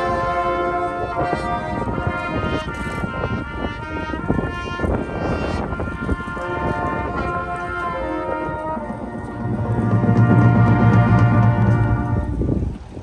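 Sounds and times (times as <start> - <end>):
brass sustaining chords: 0.0 - 12.8
drumline percussion hits: 8.8 - 12.6.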